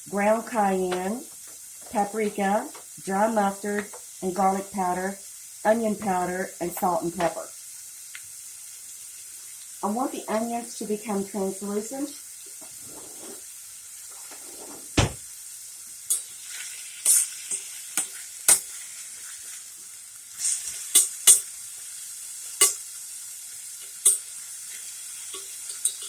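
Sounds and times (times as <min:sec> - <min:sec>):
onions sizzling in a frying pan: 0:00.0 - 0:26.0
single loud knock: 0:15.0 - 0:15.2.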